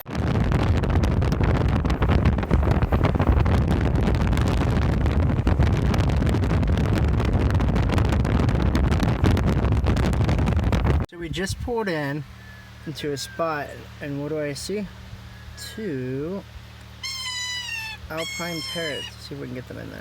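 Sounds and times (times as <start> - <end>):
wind buffeting microphone: 0.0 - 11.7.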